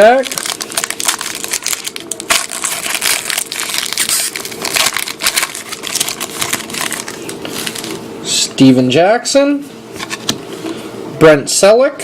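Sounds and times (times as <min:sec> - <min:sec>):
wrapper crackling: 0:00.0 - 0:08.0.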